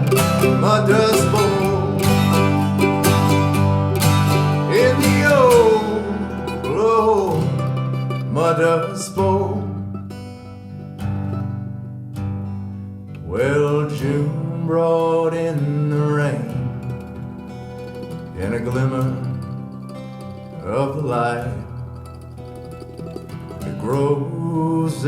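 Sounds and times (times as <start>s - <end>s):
person singing sliding notes: 0.0s - 9.8s
acoustic guitar music: 0.0s - 25.0s.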